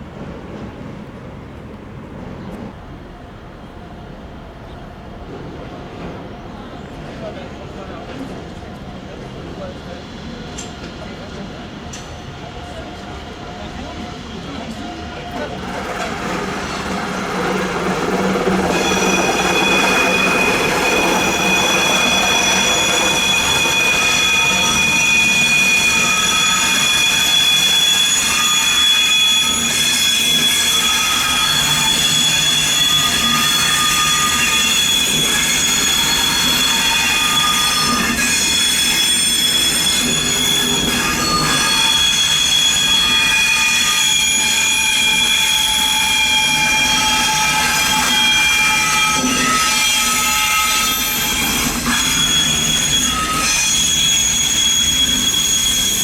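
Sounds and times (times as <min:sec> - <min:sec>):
train wheels squealing on rails: 0:00.0 - 0:56.0
lower wheel squeal: 0:12.0 - 0:56.0.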